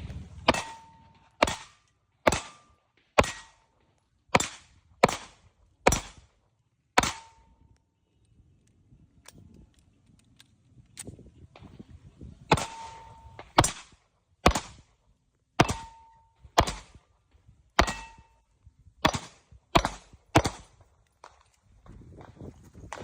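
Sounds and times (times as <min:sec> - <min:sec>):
pistol shots: 0:00.0 - 0:03.6, 0:04.3 - 0:06.3, 0:07.0 - 0:07.4, 0:12.5 - 0:14.8, 0:15.6 - 0:16.0, 0:16.6 - 0:17.0, 0:17.8 - 0:18.3, 0:19.0 - 0:20.8.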